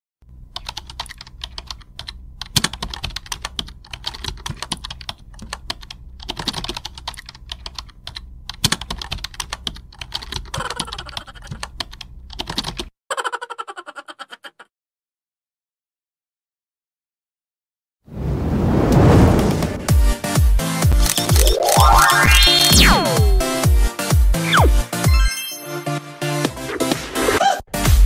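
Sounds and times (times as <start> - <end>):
rapid keyboard typing: 0.5 - 12.9, 21.0 - 23.6
evenly spaced clicks with a tone: 21.0 - 23.0.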